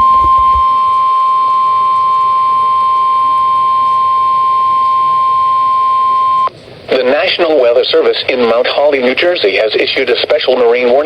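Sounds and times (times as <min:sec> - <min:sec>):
steady alarm tone beep: 0:00.0 - 0:06.5.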